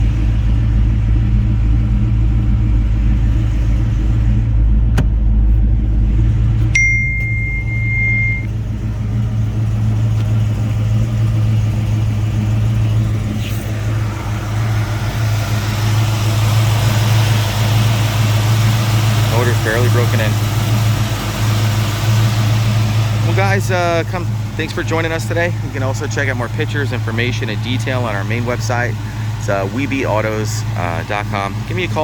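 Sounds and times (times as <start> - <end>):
car engine idling: 0.0 - 32.0
short high beep: 6.8 - 8.5.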